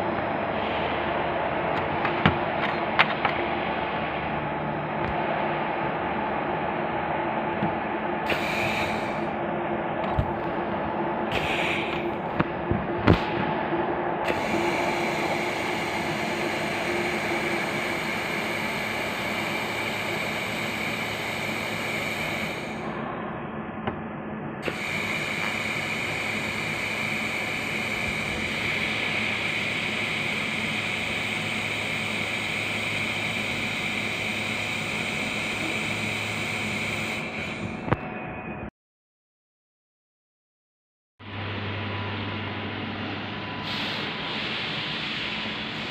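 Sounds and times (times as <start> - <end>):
laser welder hissing with high tone: 8.3 - 9.3, 11.3 - 12.1, 14.3 - 22.9, 24.6 - 37.9.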